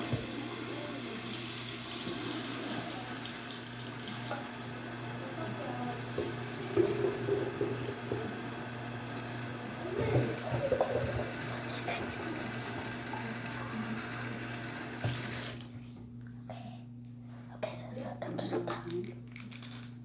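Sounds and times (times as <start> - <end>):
tap water filling spray bottle: 0.0 - 15.8.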